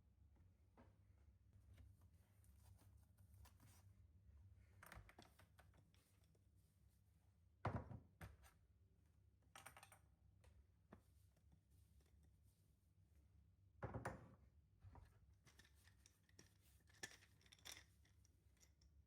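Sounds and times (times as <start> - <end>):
objects being handled: 15.4 - 18.8.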